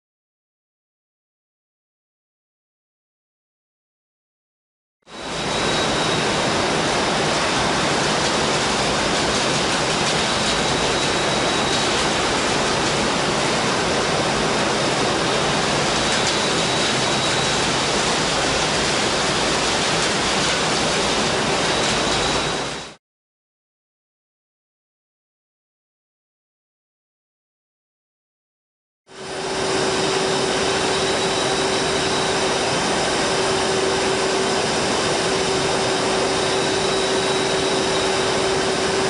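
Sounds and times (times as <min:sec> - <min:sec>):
faint high whine: 0:05.1 - 0:23.0, 0:29.1 - 0:39.0
industrial machinery roar: 0:05.1 - 0:23.0, 0:29.1 - 0:39.0.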